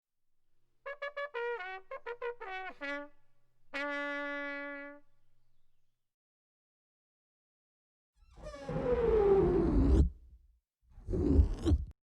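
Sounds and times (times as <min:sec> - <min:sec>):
trumpet-like brass notes: 0:00.9 - 0:05.1.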